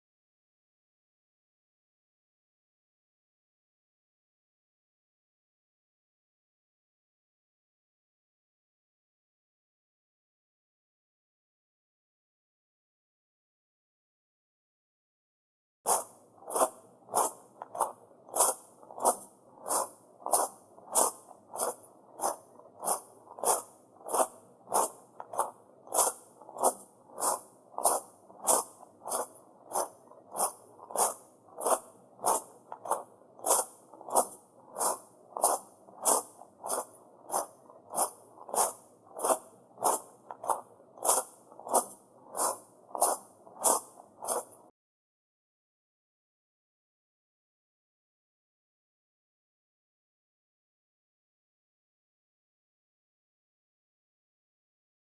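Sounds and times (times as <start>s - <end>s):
footsteps on gravel: 15.9s - 44.7s.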